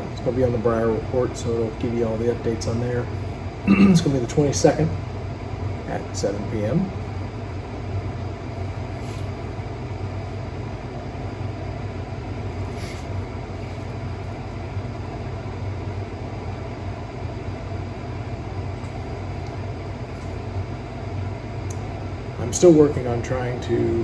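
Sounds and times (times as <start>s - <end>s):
low mechanical rumble: 0.0s - 24.0s.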